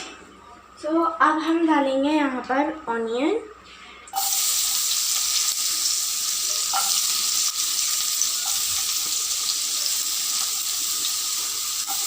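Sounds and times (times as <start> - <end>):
onion sizzling in a frying pan: 4.2 - 12.0.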